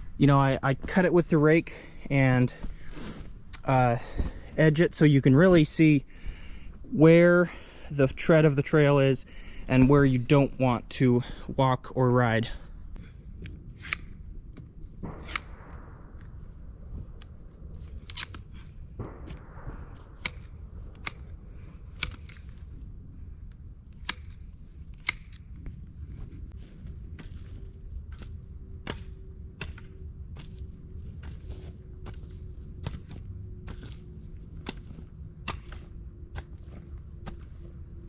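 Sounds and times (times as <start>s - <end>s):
low rumble: 0.0s - 38.0s
dirt and twigs crunching: 24.1s - 38.0s
scrapes on dirt: 30.4s - 37.9s.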